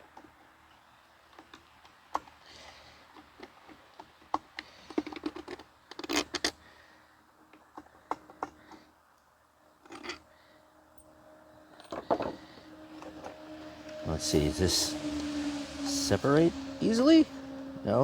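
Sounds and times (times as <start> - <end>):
plastic parts clicking and scraping: 0.0 - 6.7, 7.4 - 9.0, 9.8 - 10.3, 11.8 - 14.0.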